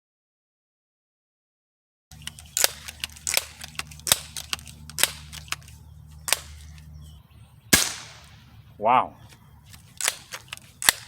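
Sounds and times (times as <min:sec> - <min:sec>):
air pistol pump lever clacks: 0:02.1 - 0:06.9, 0:09.7 - 0:11.0.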